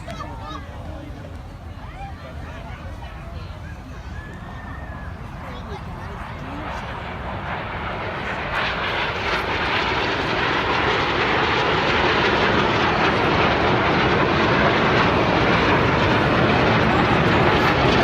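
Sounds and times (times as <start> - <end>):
jets flying past: 5.0 - 18.0.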